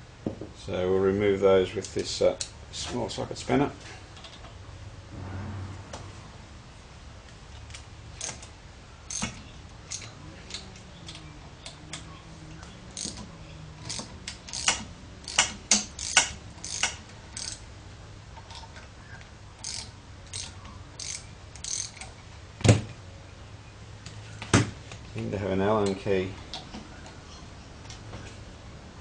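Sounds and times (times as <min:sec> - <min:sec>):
spanner metallic clicks and taps: 0:13.0 - 0:17.6, 0:25.8 - 0:26.6.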